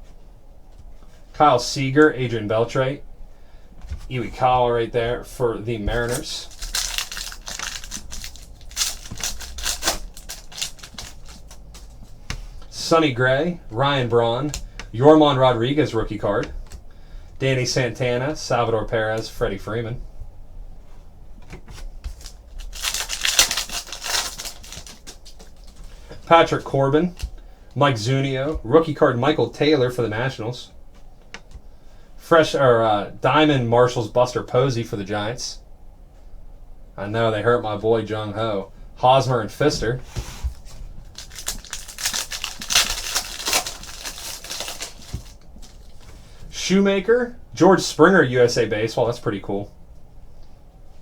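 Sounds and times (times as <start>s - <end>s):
packaging crinkling: 5.9s - 12.8s, 22.0s - 26.2s, 40.3s - 46.3s
cards rustling and clicking: 5.9s - 12.9s, 21.6s - 27.4s, 40.1s - 46.3s.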